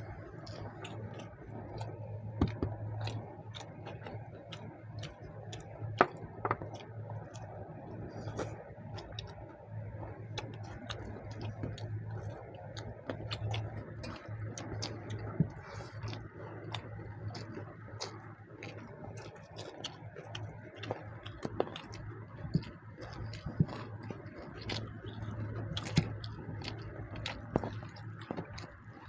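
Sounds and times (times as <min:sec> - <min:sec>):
small irregular clicks and taps: 0:00.0 - 0:07.6, 0:08.2 - 0:29.0
people chewing: 0:00.0 - 0:29.0
steady low hum: 0:00.0 - 0:29.0.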